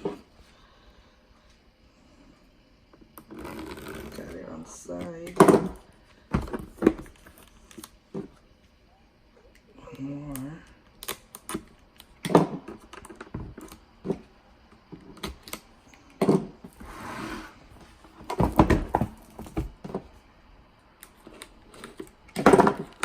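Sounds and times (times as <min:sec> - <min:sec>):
rustling scrape: 0:16.7 - 0:19.8
plastic and cardboard packaging handled: 0:16.7 - 0:20.1.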